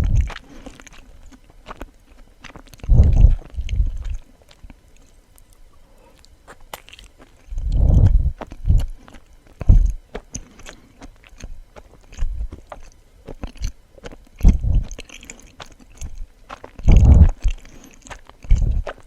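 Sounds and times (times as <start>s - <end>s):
close chewing: 0.0s - 19.0s
mouth clicks: 12.1s - 19.0s.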